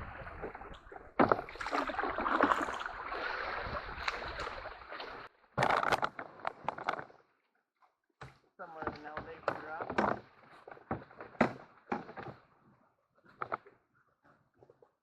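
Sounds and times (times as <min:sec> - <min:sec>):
paddle splashing water: 0:00.0 - 0:07.2, 0:08.2 - 0:12.4.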